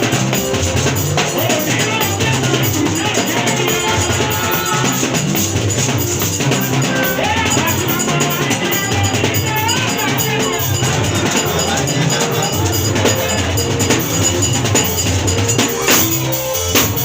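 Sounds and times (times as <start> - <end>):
drum kit steady beat: 0.0 - 17.0
wavering melody line: 0.0 - 17.0.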